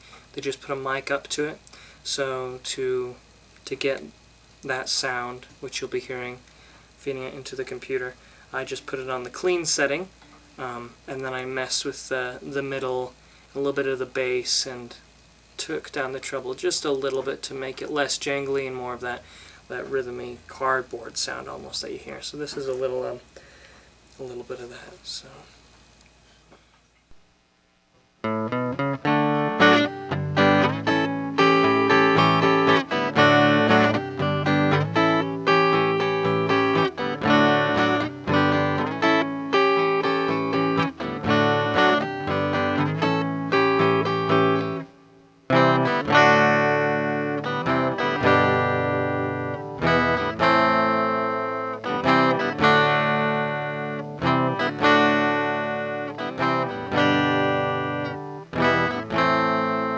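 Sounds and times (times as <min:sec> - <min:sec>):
electric guitar playing chords: 0:28.2 - 0:59.9.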